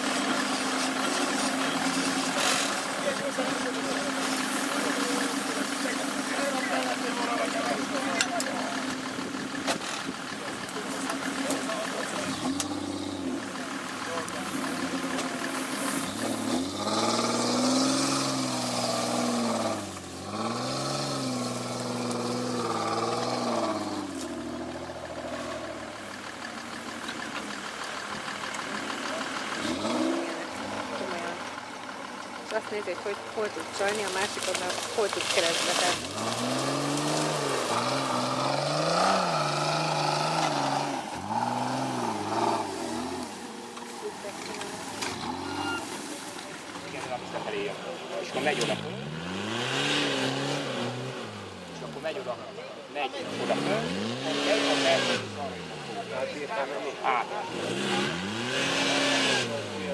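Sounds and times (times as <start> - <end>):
engine revving: 0.0 - 59.9.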